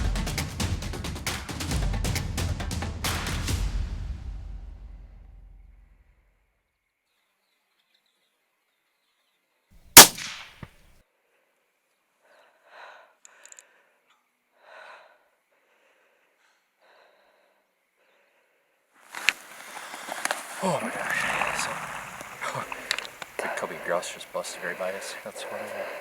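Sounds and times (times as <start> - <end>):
sharp crack: 9.8 - 10.8, 19.1 - 24.9
rifle shot: 9.9 - 10.8.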